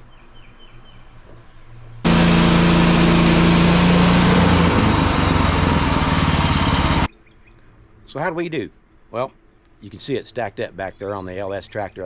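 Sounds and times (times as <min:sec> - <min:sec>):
small gasoline engine running: 0:02.1 - 0:07.1.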